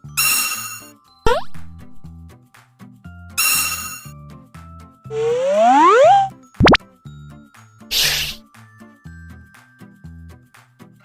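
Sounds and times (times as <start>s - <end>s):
children's background music: 0.0s - 2.8s
quick upward pop: 1.3s - 2.1s, 5.1s - 6.8s
whistle-like tone gliding upward: 5.1s - 6.8s.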